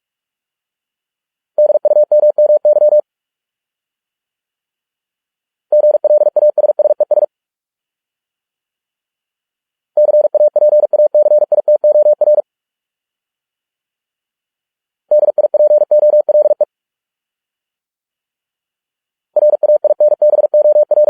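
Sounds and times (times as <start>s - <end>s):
morse code beeps: 1.6s - 3.0s, 5.8s - 7.3s, 10.0s - 12.4s, 15.1s - 16.7s, 19.4s - 21.0s.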